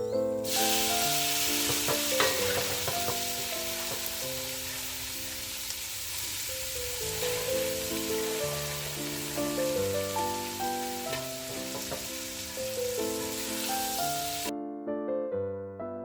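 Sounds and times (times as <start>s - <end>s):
food sizzling in hot oil: 0.3s - 14.5s
utensil knocks: 1.6s - 4.2s, 11.1s - 12.3s.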